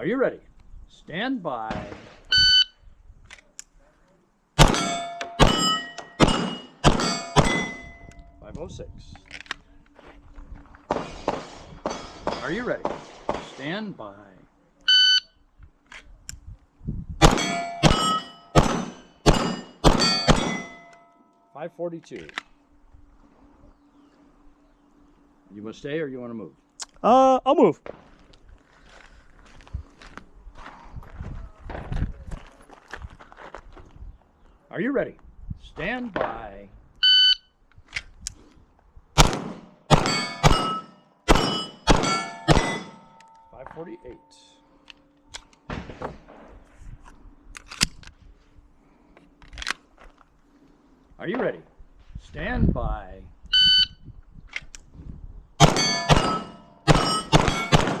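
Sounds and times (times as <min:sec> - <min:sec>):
pistol shots: 0:04.6 - 0:07.9, 0:10.9 - 0:13.6, 0:17.2 - 0:20.8, 0:39.2 - 0:43.2, 0:55.6 - 0:58.0
steel plates ringing: 0:04.6 - 0:08.4, 0:17.2 - 0:21.6, 0:39.9 - 0:44.8, 0:55.6 - 0:58.0.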